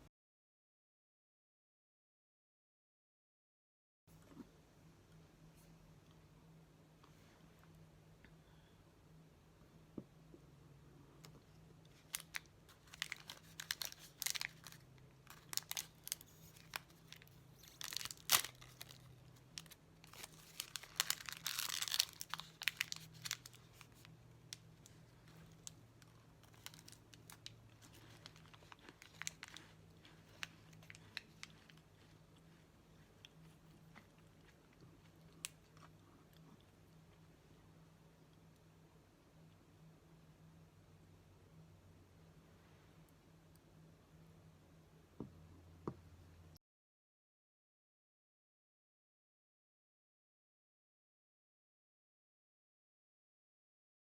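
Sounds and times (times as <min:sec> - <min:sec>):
wrapper crinkling and tearing: 0:11.9 - 0:32.2.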